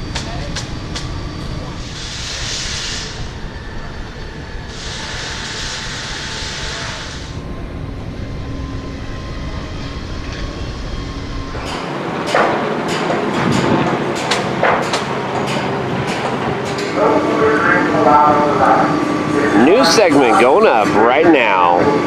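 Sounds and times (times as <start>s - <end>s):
hiss: 1.8s - 3.3s, 4.7s - 7.4s
low machine rumble: 7.2s - 11.7s
knocks and clanks: 11.6s - 17.0s.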